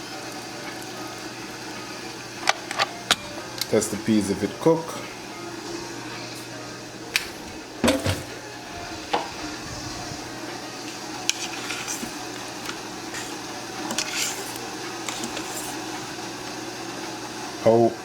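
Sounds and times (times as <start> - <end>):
spoon scraping a cooking pot: 10.9 - 16.2.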